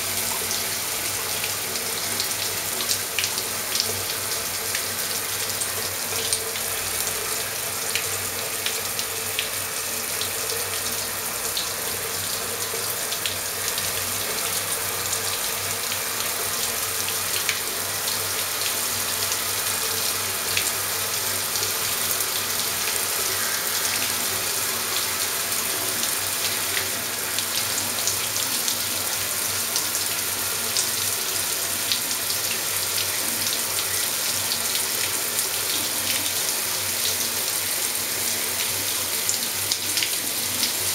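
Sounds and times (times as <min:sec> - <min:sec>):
shower water spraying: 0:00.0 - 0:40.9.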